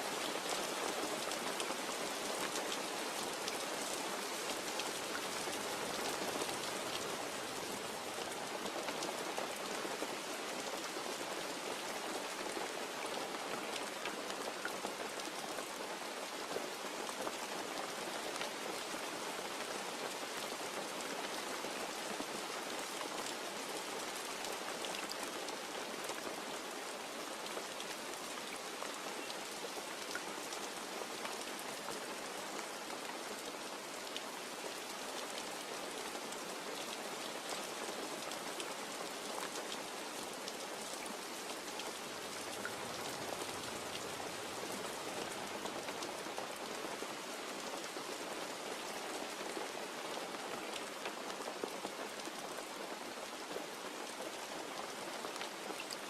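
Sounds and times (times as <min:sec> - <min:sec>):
rain pattering on a surface: 0:00.0 - 0:56.0.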